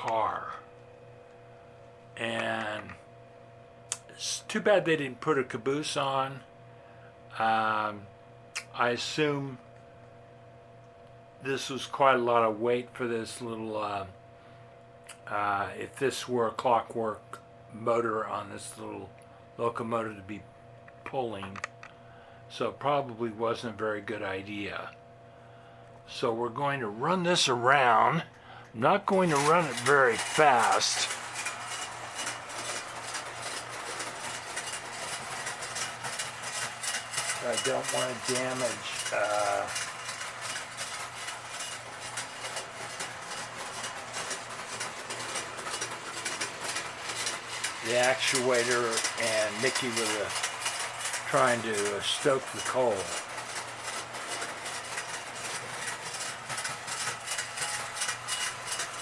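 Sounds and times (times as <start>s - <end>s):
toy train motor humming: 28.8s - 59.0s
wheels rattling on rails: 29.1s - 59.0s.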